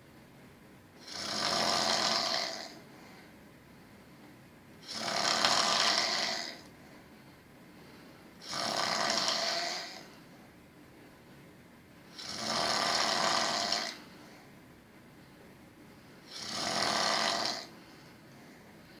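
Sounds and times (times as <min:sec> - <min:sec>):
person snoring: 0:01.0 - 0:02.8, 0:04.8 - 0:06.7, 0:08.4 - 0:10.2, 0:12.1 - 0:14.1, 0:16.3 - 0:17.8.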